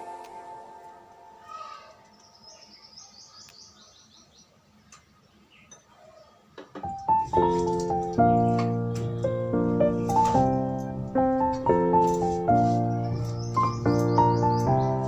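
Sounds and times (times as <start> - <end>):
piano background music: 0.0 - 2.4, 6.8 - 15.0
faint bird chirps: 12.8 - 15.0.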